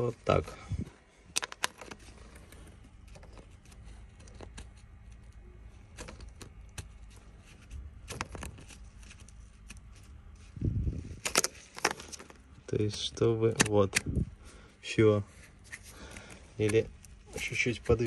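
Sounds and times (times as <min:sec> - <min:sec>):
small metal parts clicking: 0:01.3 - 0:02.4.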